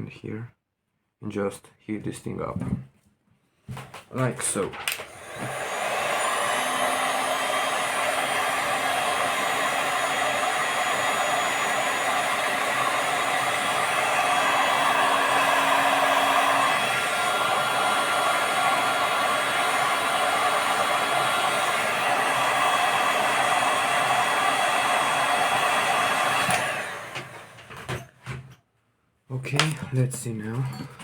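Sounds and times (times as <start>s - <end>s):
electric hot-air blower running: 4.8s - 28.0s.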